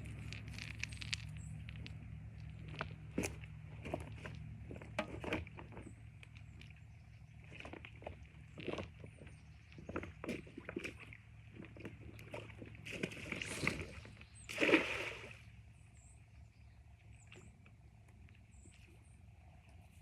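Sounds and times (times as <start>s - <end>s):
knocks and handling noises: 0.0s - 5.9s
splashes in water: 12.2s - 15.5s.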